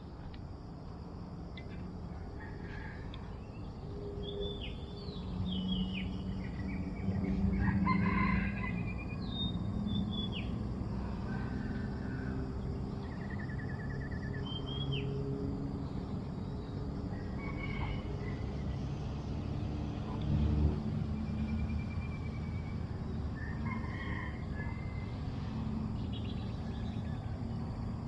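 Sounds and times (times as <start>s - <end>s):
rooster crowing: 2.2s - 3.5s, 7.3s - 9.3s, 11.0s - 12.8s, 17.1s - 18.8s, 23.3s - 25.6s.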